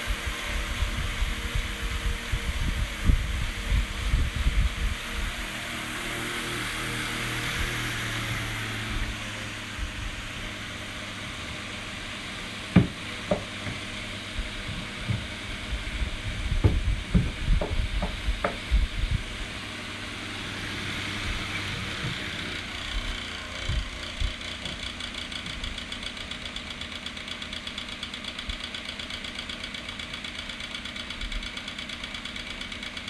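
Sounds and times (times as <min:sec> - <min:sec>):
fan rushing air: 0:00.0 - 0:25.9
fan rattling knocks: 0:08.1 - 0:23.1.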